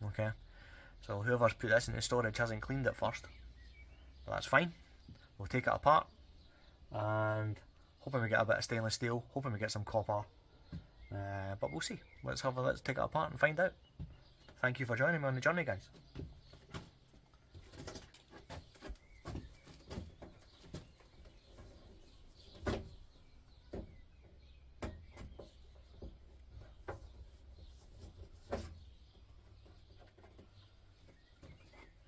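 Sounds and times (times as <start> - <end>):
clicks and knocks of plastic and metal: 15.9 - 27.2.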